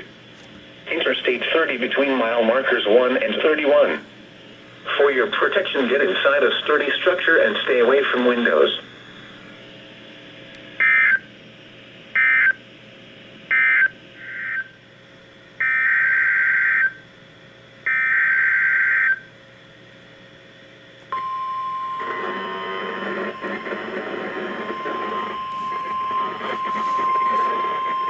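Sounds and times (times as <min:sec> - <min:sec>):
steady alert tone: 0:21.2 - 0:28.0
screeching data bursts: 0:21.8 - 0:28.0.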